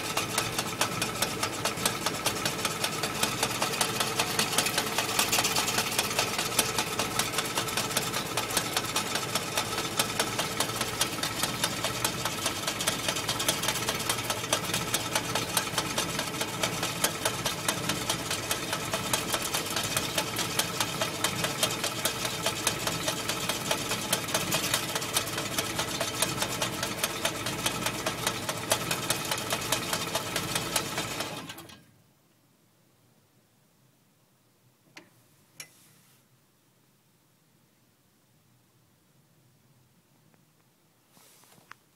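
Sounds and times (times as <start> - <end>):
jeep engine rattling: 0.0 - 31.2.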